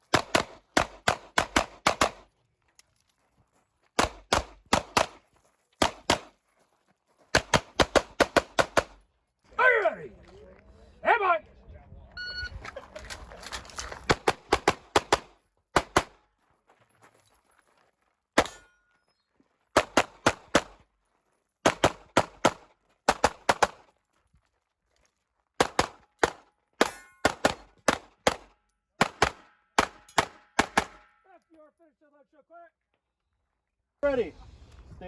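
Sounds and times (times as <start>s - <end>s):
pistol shots: 0.1s - 2.3s, 4.0s - 5.2s, 5.8s - 6.3s, 7.4s - 9.0s, 14.1s - 16.2s, 19.8s - 20.8s, 21.6s - 23.8s, 25.6s - 31.1s.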